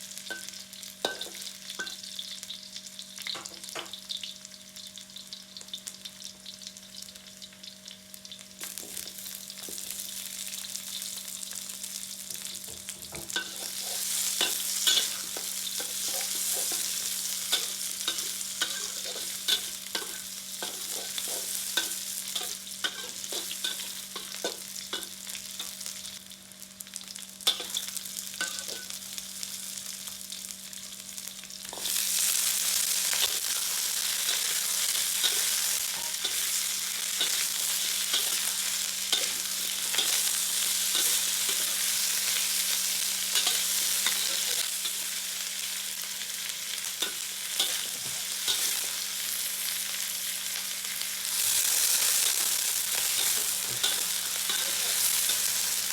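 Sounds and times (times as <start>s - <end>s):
food frying in hot oil: 0.0s - 55.9s
utensil stirring in pan: 13.4s - 25.7s, 33.1s - 45.2s, 51.4s - 55.9s.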